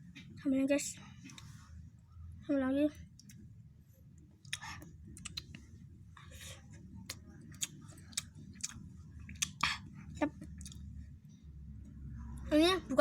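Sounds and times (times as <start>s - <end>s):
faint low hum: 0.0s - 13.0s
mouth clicks and smacks: 4.4s - 5.7s, 7.0s - 10.8s
person chewing food: 4.4s - 5.7s, 7.0s - 10.9s.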